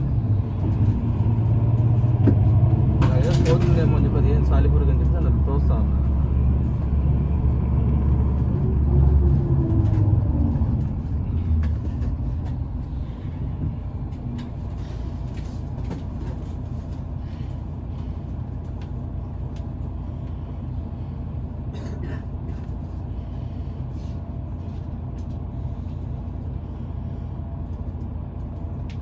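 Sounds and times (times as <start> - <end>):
large vehicle engine: 0.0 - 29.0
low traffic rumble: 0.0 - 29.0.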